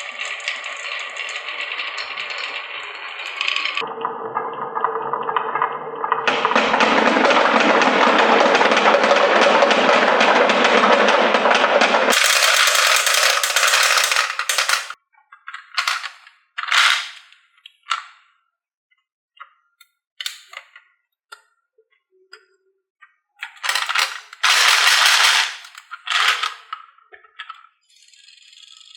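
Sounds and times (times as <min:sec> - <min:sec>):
marbles clattering on wooden track: 0:06.3 - 0:15.0, 0:15.6 - 0:17.3, 0:23.4 - 0:26.8.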